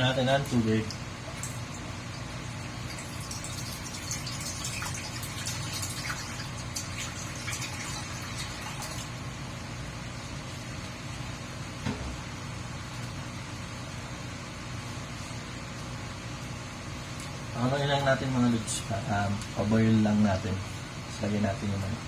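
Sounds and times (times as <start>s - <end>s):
steady low hum: 0.0s - 22.0s
splashing and crackling: 0.4s - 9.2s.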